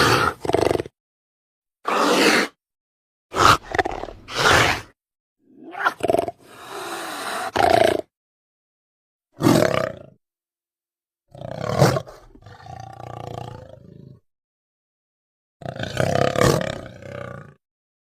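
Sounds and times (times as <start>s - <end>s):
dinosaur roaring and growling: 0.0s - 0.9s, 1.8s - 2.6s, 3.3s - 4.9s, 9.4s - 10.2s, 11.3s - 14.0s, 15.6s - 17.6s.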